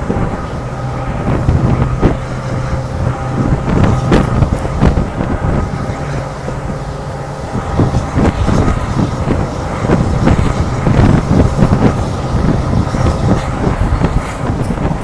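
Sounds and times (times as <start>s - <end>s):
train rumbling at speed: 0.0s - 15.0s
wheels clattering on track: 0.0s - 15.0s.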